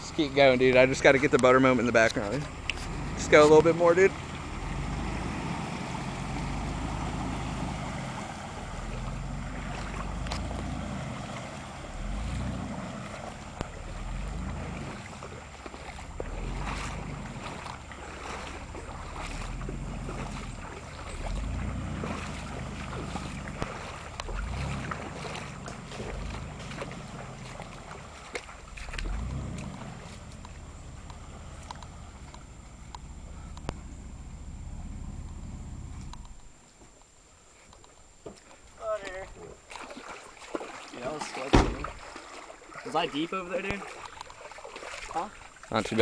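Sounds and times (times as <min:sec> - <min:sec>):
vehicle engine revving: 0:00.0 - 0:36.4
water splashing: 0:00.0 - 0:46.0.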